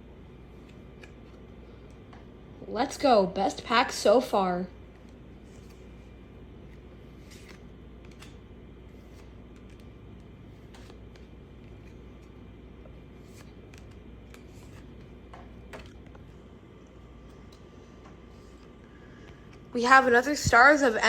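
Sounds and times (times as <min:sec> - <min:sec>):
steady low hum: 0:00.0 - 0:21.0
cards clicking and rustling: 0:00.6 - 0:02.2, 0:04.9 - 0:12.4, 0:13.1 - 0:16.2.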